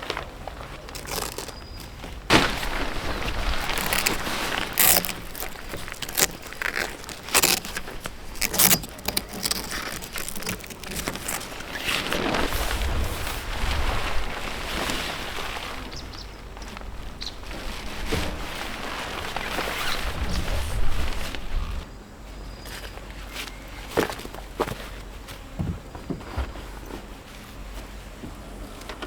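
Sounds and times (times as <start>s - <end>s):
rustling: 0.0s - 21.9s.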